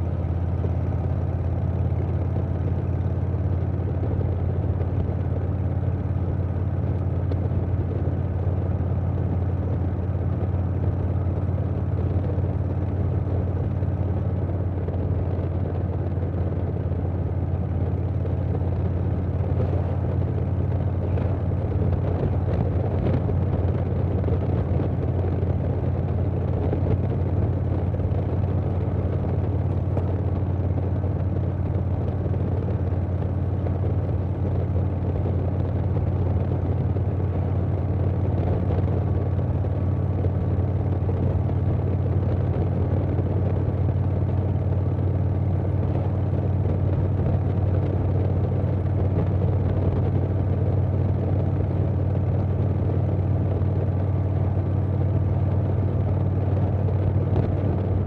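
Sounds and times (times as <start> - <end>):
motorcycle engine cruising: 0.0 - 58.0
wind rush on microphone: 11.1 - 55.3, 56.0 - 58.0.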